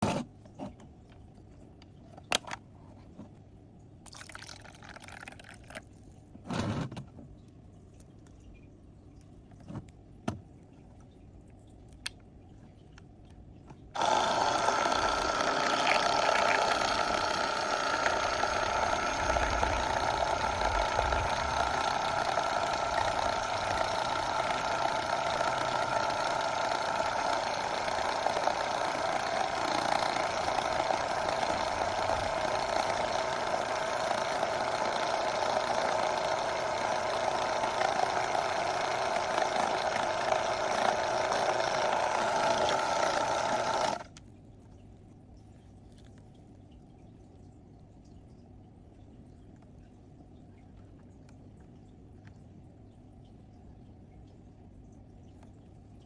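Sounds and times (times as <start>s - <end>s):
small toy motor running: 14.0s - 44.1s.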